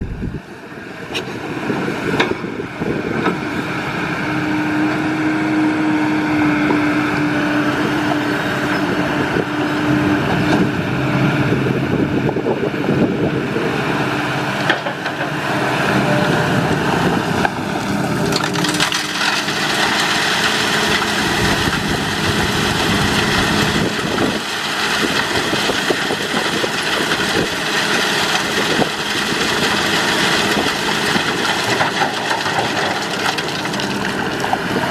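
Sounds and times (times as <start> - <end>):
excavator diesel engine: 0.0 - 34.9.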